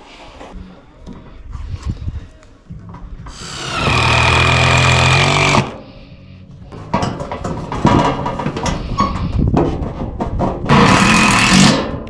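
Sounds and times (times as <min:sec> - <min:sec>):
power screwdriver driving screw: 0:03.3 - 0:05.8
clatter and knocks: 0:06.8 - 0:12.0.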